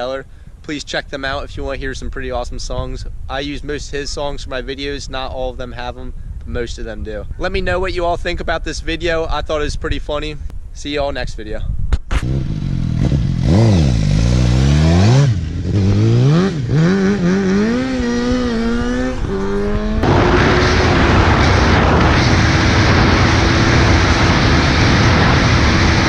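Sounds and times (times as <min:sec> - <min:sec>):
motorcycle engine revving: 0:12.1 - 0:26.0
loud rushing noise: 0:18.0 - 0:26.0.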